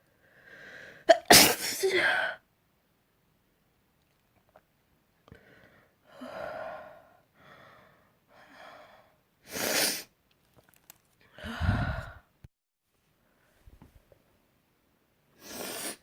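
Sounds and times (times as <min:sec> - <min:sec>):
person sneezing loudly: 0:01.1 - 0:02.4
voiced in-breaths: 0:11.3 - 0:12.3.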